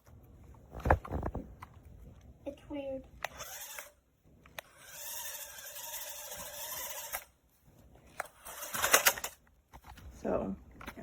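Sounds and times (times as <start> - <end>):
small motors and gears whirring: 3.2 - 7.4, 8.2 - 9.4
toy car click: 8.2 - 9.4.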